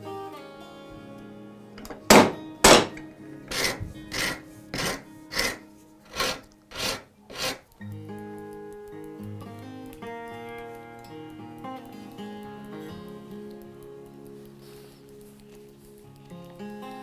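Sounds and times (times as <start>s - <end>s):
background music: 0.0s - 17.0s
hand tool whacking wood: 1.8s - 7.6s
soft tool strokes on wood: 2.7s - 7.8s.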